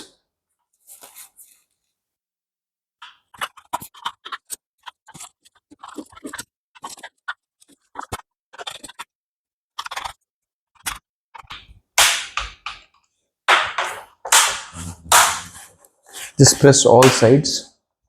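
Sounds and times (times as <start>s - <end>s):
plastic clips snapping into place: 13.5s - 15.5s.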